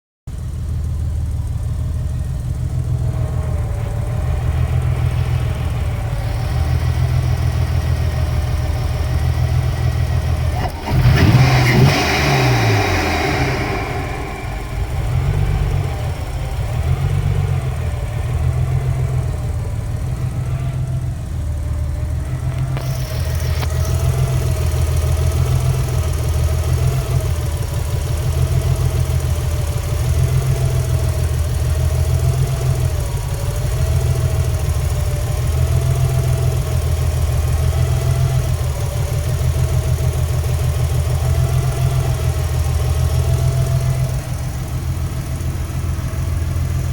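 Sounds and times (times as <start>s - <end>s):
engine idling roughly with misfire: 0.3s - 46.9s
wavering whine: 2.9s - 24.8s.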